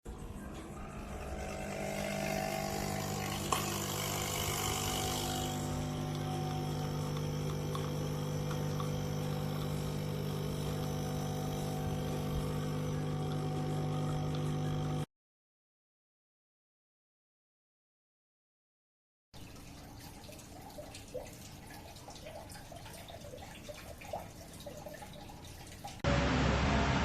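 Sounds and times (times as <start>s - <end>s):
coffee machine pump humming: 0.1s - 15.1s.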